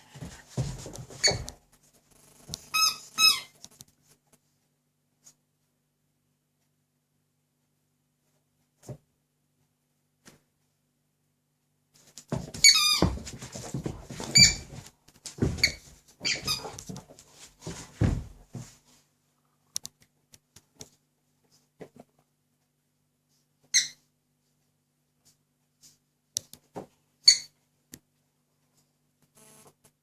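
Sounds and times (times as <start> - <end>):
squeaky toy squeaking: 2.7 - 3.6, 23.7 - 24.0, 27.2 - 27.6.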